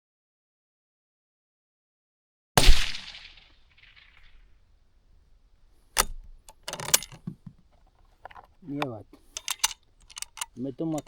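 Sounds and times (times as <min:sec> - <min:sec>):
suppressed rifle shot: 0:02.6 - 0:07.6
metallic clicks and clatter: 0:05.8 - 0:11.0.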